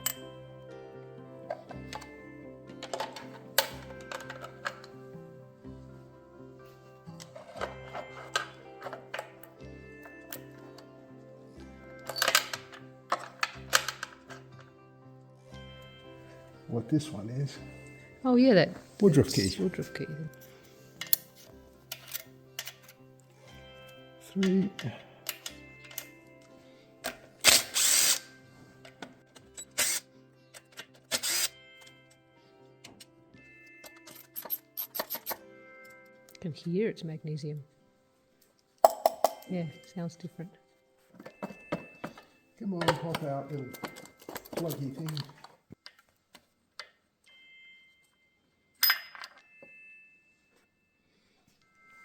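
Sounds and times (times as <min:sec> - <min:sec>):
small metallic clicks: 0:12.0 - 0:14.7, 0:21.0 - 0:23.0
power tool bursts: 0:27.4 - 0:28.3, 0:29.6 - 0:30.1, 0:31.1 - 0:31.6.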